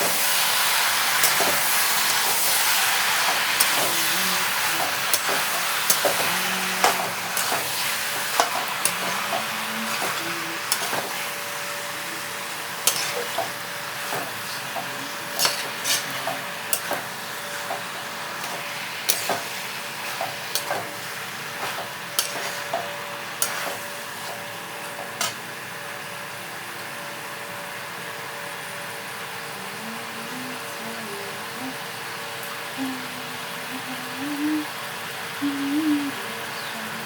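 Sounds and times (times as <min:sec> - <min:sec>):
chicken sizzling in a pan: 0:00.0 - 0:26.6
spoon clinking and scraping pan: 0:04.9 - 0:11.2, 0:12.8 - 0:17.1, 0:17.7 - 0:20.9, 0:21.6 - 0:24.4.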